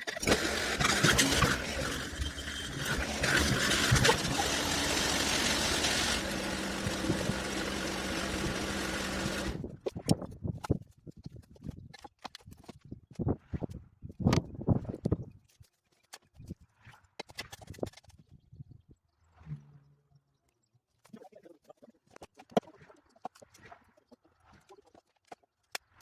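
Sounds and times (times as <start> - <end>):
bulldozer engine running: 0.1 - 9.6.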